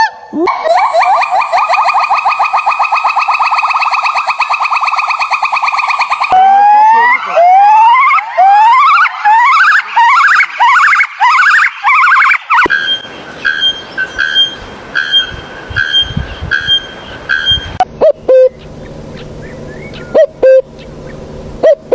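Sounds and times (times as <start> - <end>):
hoot-like calls: 0.5 - 6.4, 17.8 - 21.9
rising whoop calls: 0.5 - 9.0
noisy background: 17.2 - 21.9
brief calls: 18.2 - 21.9.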